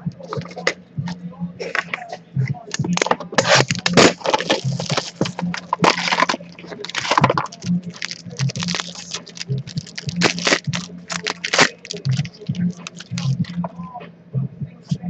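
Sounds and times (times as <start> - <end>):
foil wrapper crinkling: 2.7 - 13.6.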